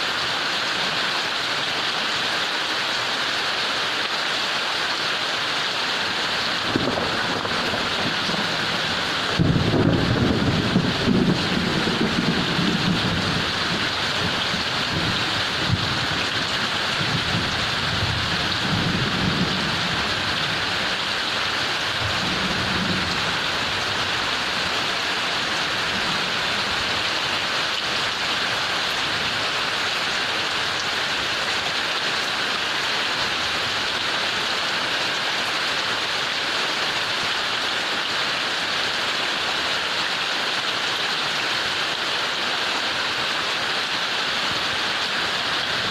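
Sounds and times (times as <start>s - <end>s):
heavy rain falling: 0.0s - 45.9s
low rumble of thunder: 6.6s - 20.6s.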